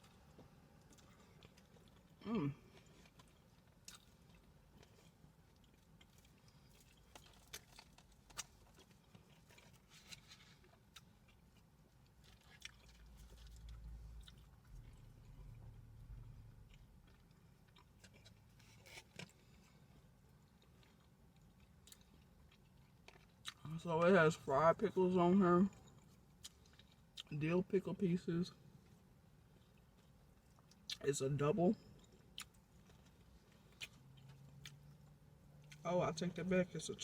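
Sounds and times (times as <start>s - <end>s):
chewing food: 0.0s - 23.8s, 25.7s - 27.4s, 31.8s - 35.8s.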